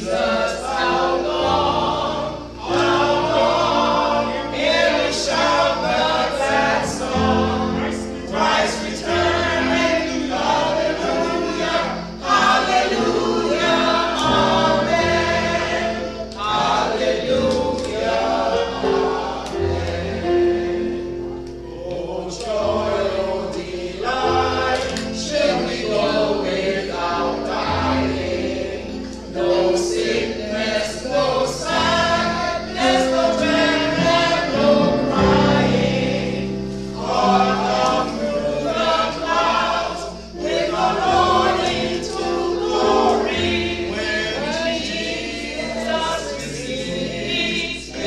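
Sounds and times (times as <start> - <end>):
choir singing a hymn: 0.0 - 48.0.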